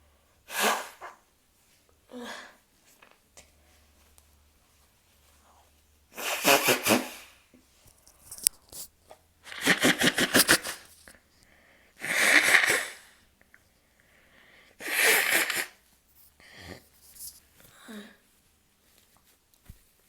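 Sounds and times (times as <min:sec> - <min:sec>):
person blowing nose: 0:00.5 - 0:01.2, 0:06.1 - 0:07.5, 0:09.4 - 0:11.1, 0:12.0 - 0:13.2, 0:14.8 - 0:15.8.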